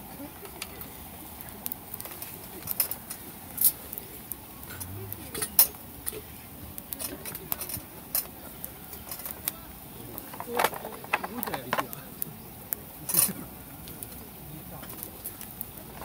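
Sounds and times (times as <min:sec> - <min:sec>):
cookware and utensils clinking: 0:10.2 - 0:11.9, 0:13.0 - 0:13.4.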